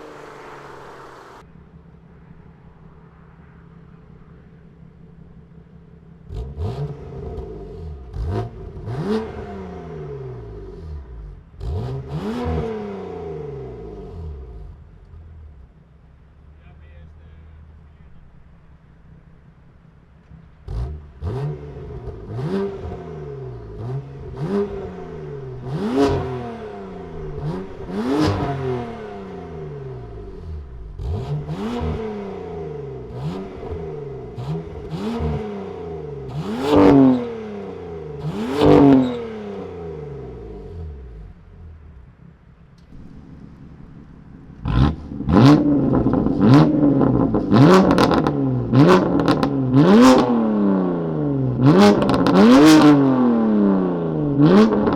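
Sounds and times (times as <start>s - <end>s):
car engine revving with exhaust crackles: 0.0s - 54.9s.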